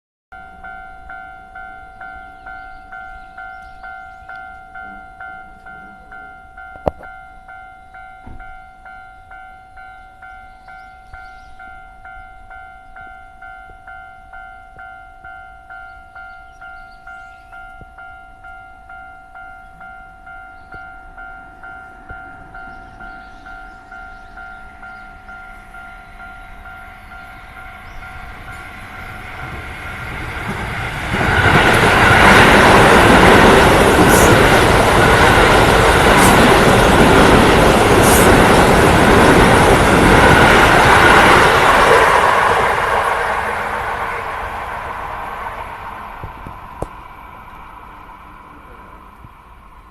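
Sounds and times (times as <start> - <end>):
level crossing bell dinging: 0.4 - 16.9
electric train passing: 0.4 - 49.9
wheels rumbling on rail: 0.4 - 49.9.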